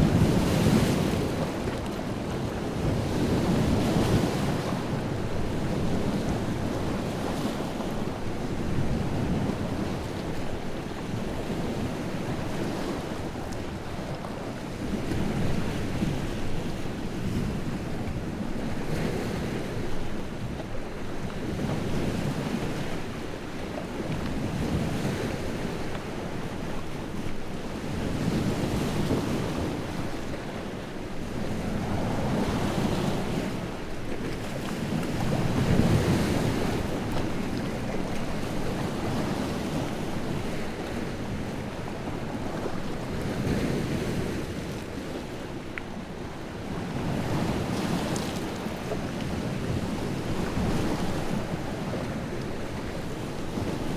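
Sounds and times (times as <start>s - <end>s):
lake waves breaking on shore: 20.8s - 53.9s.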